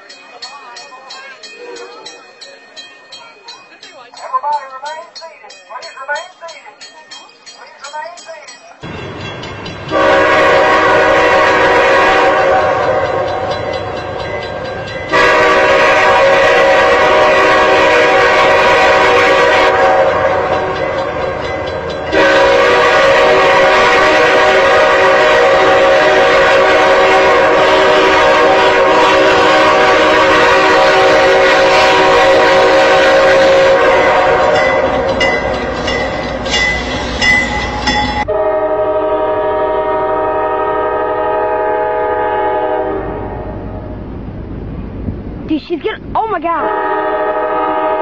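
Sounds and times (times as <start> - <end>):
locomotive air horn: 9.9 - 13.5, 15.1 - 20.8, 22.1 - 35.1, 38.2 - 43.7, 46.6 - 48.0
quieter train horn chord: 9.9 - 13.7, 15.1 - 35.5, 38.2 - 43.9, 46.6 - 48.0.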